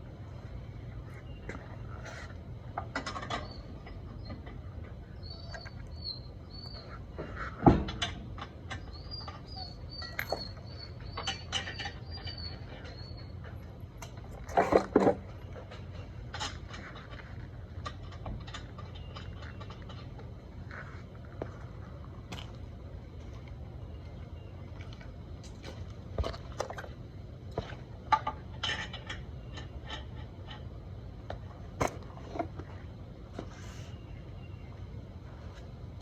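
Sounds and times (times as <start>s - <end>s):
steady low hum: 0.0s - 36.0s
small bird chirping: 5.1s - 7.1s, 8.7s - 13.4s.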